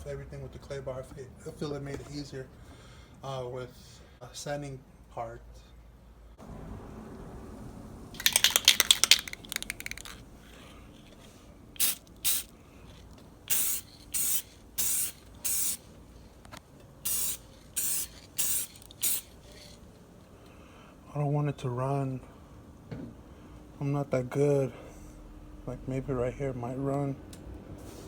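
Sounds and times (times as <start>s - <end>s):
spray can rattling: 8.2s - 10.3s, 11.0s - 15.9s, 17.0s - 19.8s
aerosol spray hissing: 11.8s - 15.9s, 17.0s - 19.8s.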